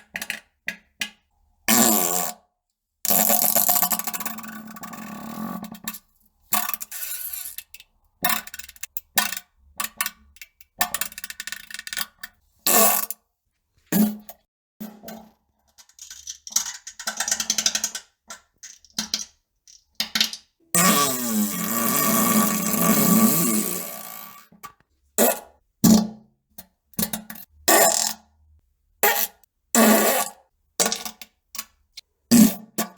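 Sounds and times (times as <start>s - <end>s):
fart sounds: 12.7s - 13.1s, 20.8s - 24.4s, 32.3s - 32.9s.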